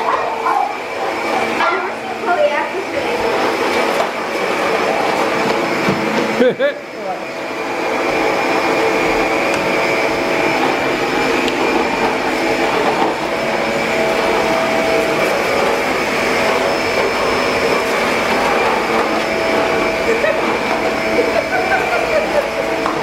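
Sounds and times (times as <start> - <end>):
vacuum cleaner running: 0.0 - 23.0.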